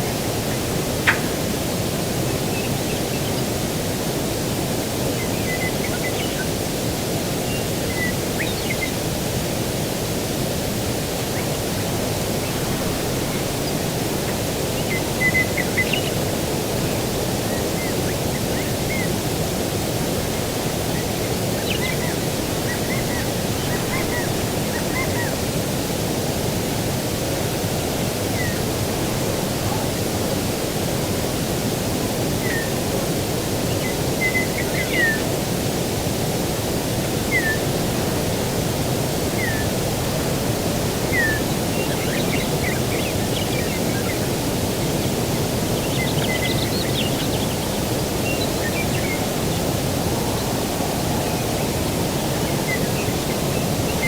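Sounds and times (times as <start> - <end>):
birds chirping: 0.0 - 6.6, 11.1 - 25.4, 28.0 - 30.1, 39.2 - 54.0
distant ocean surf: 7.9 - 54.0.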